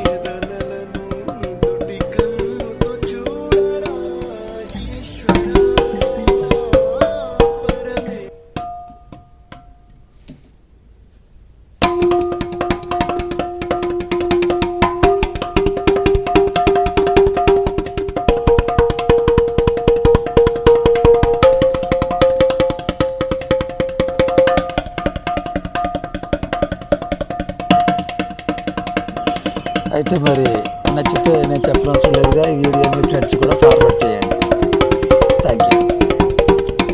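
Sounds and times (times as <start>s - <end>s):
long held rising notes: 4.0s - 7.7s
rapid drum-like percussion: 29.1s - 36.9s.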